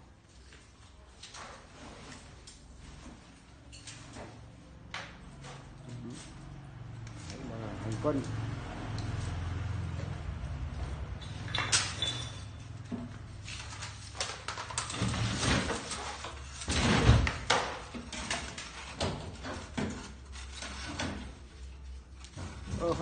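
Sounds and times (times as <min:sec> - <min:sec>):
metal parts knocking and rattling: 0:11.2 - 0:21.3.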